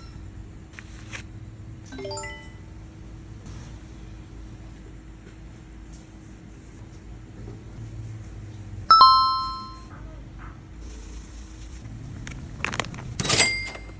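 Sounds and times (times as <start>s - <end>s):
bright metallic ding: 8.9s - 9.9s.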